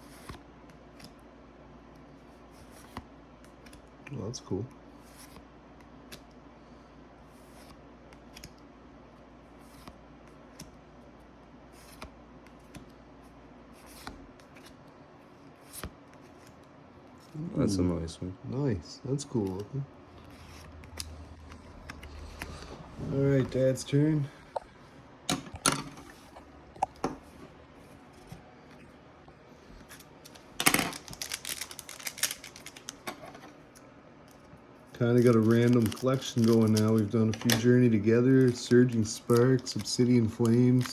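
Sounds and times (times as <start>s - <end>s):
low room hum: 0.0s - 40.9s
cards clicking and rustling: 2.5s - 4.3s, 9.6s - 10.8s, 11.8s - 13.0s, 13.8s - 17.3s, 19.3s - 23.7s, 29.7s - 40.9s
foil wrapper ripping and crinkling: 30.3s - 33.0s, 35.0s - 37.3s.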